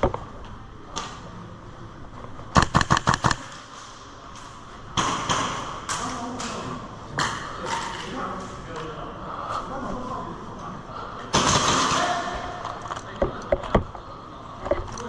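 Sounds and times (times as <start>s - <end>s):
airsoft gun burst: 2.6s - 3.5s, 11.3s - 12.4s.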